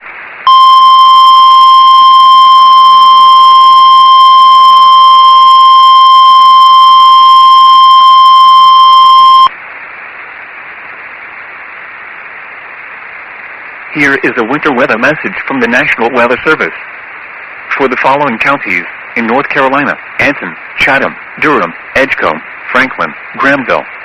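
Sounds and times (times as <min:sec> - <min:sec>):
loud high alarm tone: 0:00.5 - 0:09.5.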